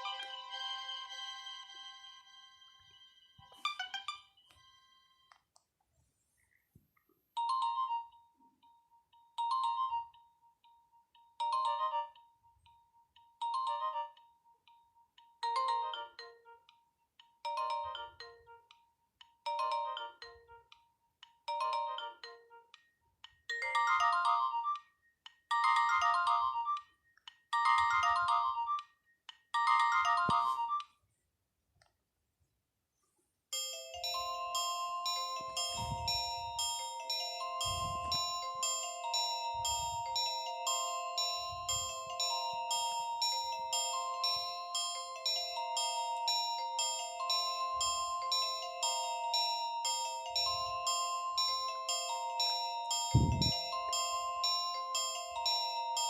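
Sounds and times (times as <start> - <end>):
phone ringtone: 0.0 - 2.3, 7.4 - 16.7, 17.4 - 18.8, 19.4 - 20.7, 21.5 - 22.8, 23.5 - 26.9, 27.6 - 29.0, 29.6 - 31.0, 33.6 - 56.0
chiming ringtone: 0.0 - 2.4, 7.4 - 22.8, 23.4 - 31.0, 33.5 - 56.0.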